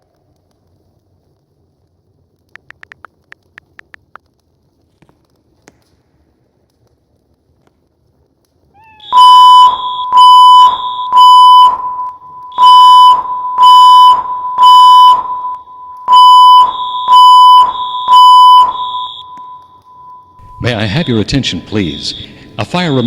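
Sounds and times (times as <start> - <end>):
fire alarm beeping: 9.0 - 23.0.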